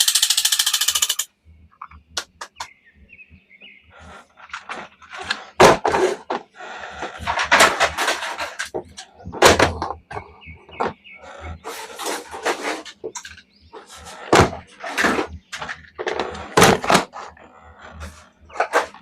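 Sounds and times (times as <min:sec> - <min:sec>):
plastic toys and packaging handled: 0:04.1 - 0:19.0.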